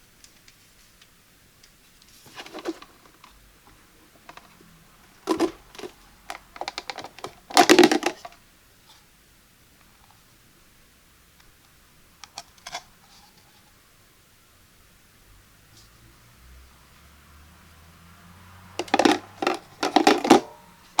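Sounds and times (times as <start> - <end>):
plastic clicks and rattles: 1.6 - 3.3, 4.2 - 4.6, 5.2 - 8.4, 18.8 - 20.6.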